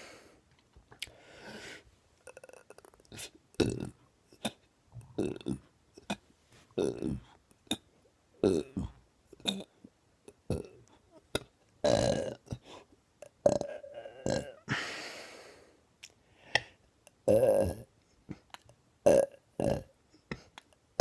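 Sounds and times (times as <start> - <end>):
man burping: 2.3 - 4.6, 5.2 - 6.2, 8.4 - 9.7, 11.8 - 12.6, 13.4 - 14.9, 17.2 - 17.9, 19.1 - 19.9.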